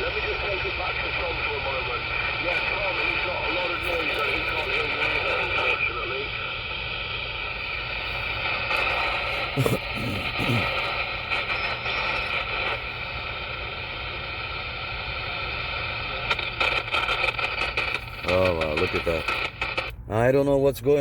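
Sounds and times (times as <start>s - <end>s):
whining interference tones: 0.0s - 20.0s
radio static hiss: 0.0s - 20.4s.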